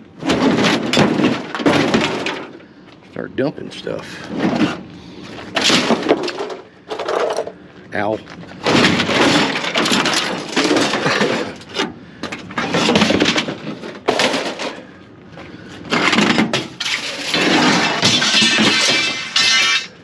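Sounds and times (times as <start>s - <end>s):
scrap metal crashing onto pile: 0.2s - 2.6s, 5.6s - 7.5s, 8.6s - 14.9s, 15.9s - 20.0s.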